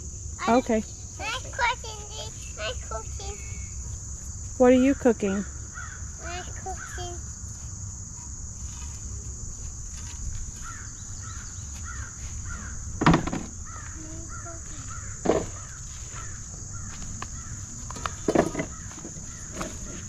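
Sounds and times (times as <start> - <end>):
high insect drone: 0.0 - 20.0
small birds chirping: 0.4 - 8.8, 9.4 - 20.0
crow cawing: 4.9 - 7.2, 10.6 - 13.0, 13.6 - 19.6.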